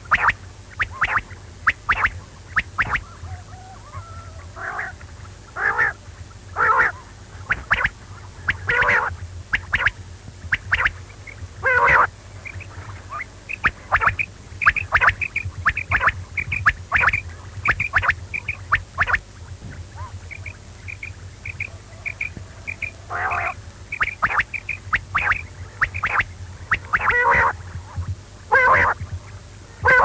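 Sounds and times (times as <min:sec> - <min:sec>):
low hum: 0:00.0 - 0:30.0
quail calling: 0:00.0 - 0:30.0.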